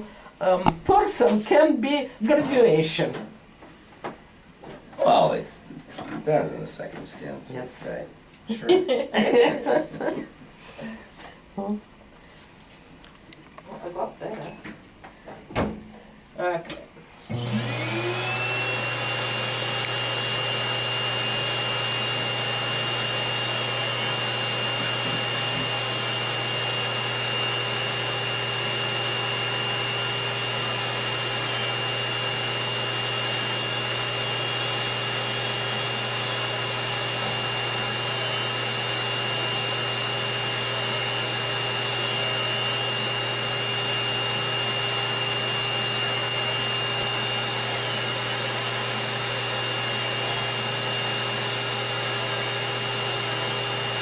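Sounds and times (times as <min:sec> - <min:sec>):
electric nail drill whining: 0:17.3 - 0:54.0
burr grinding toenail: 0:27.3 - 0:54.0.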